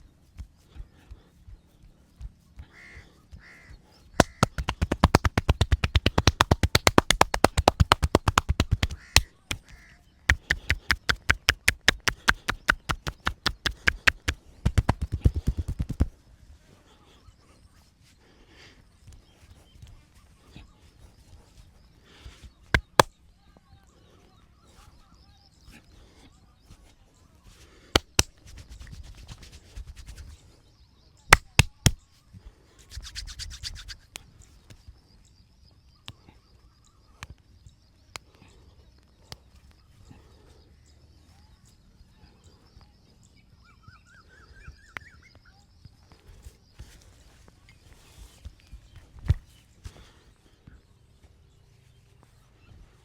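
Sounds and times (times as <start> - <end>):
fast rhythmic hand strokes: 4.1 - 16.2, 22.1 - 23.2, 27.9 - 30.6, 31.3 - 32.0, 32.8 - 34.2
hands cracking on head: 4.2 - 16.2, 22.7 - 23.2, 27.9 - 30.2, 31.3 - 32.0.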